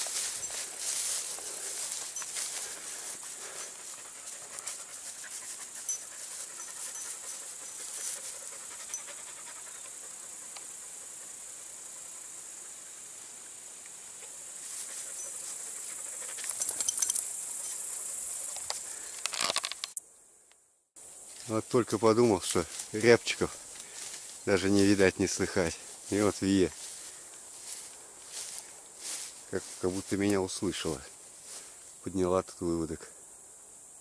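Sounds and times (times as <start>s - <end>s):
steady high hiss: 0.0s - 19.0s, 21.0s - 34.0s
dog panting: 0.9s - 13.0s, 14.7s - 16.9s.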